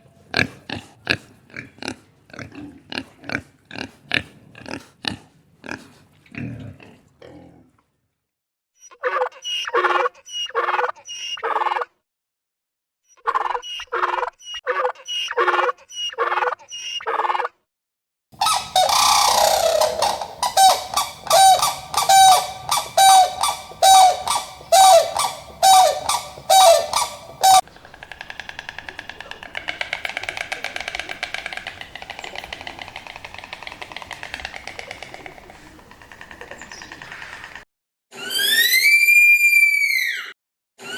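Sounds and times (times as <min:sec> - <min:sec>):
animal short repeated calls: 0:18.4 - 0:35.5
louder animal call: 0:18.4 - 0:35.5.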